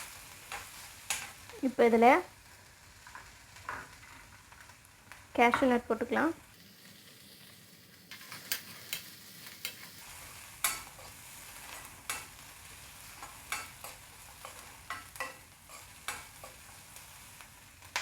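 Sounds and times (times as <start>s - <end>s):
food sizzling in a pan: 0.0s - 18.0s
spatula scraping a pan: 6.7s - 17.8s.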